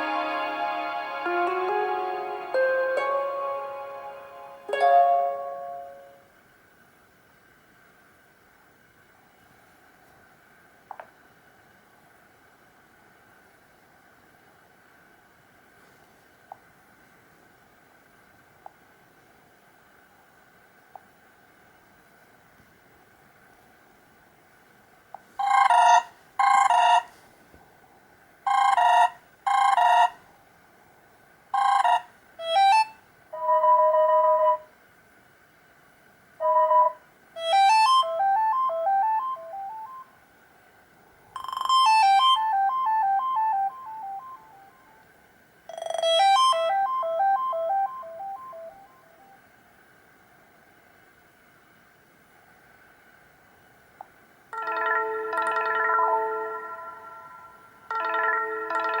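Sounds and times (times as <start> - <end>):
two-tone beep: 41.4 - 44.7
rippling melodic jingles: 54.6 - 59.0.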